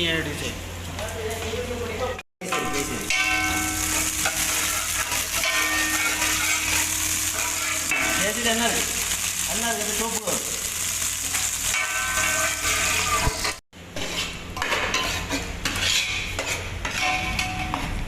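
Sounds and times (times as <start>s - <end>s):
food sizzling in a pan: 2.4s - 14.4s
utensil scraping metal pan: 11.3s - 17.8s.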